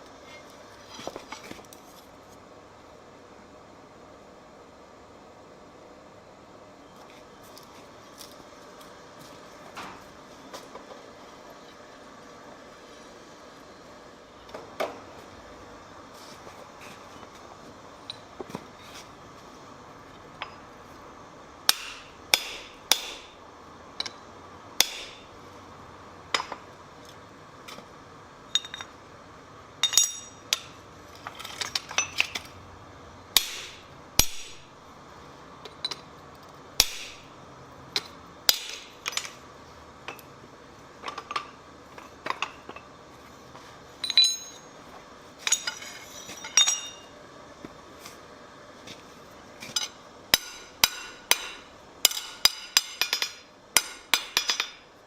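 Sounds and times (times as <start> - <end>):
hammer striking steel on anvil: 21.7 - 23.4, 24.8 - 25.3, 33.4 - 34.7, 36.8 - 37.3, 38.5 - 39.3, 50.4 - 54.8.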